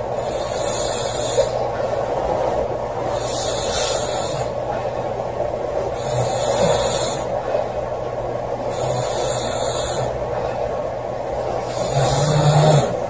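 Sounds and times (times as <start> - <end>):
steady background hiss: 0.0 - 13.0
woman snoring: 11.7 - 13.0.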